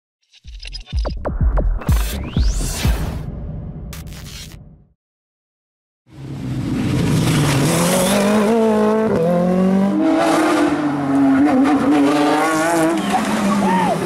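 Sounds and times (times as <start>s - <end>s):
rally car engine revving: 6.6s - 14.0s.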